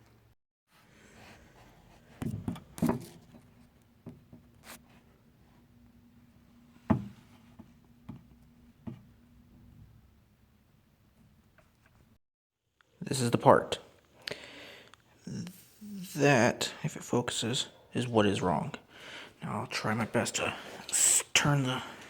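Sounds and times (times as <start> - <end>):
objects knocking and tapping: 6.8 - 9.1.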